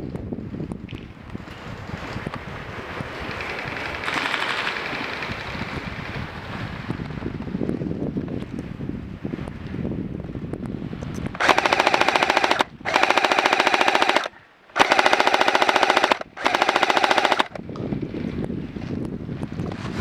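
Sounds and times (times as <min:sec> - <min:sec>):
airsoft gun firing bursts: 0:11.4 - 0:17.6.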